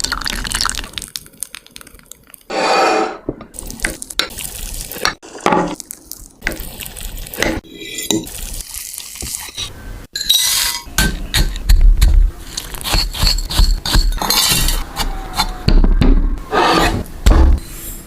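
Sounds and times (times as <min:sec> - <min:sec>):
utensils clinking against a bowl: 0:12.5 - 0:15.5.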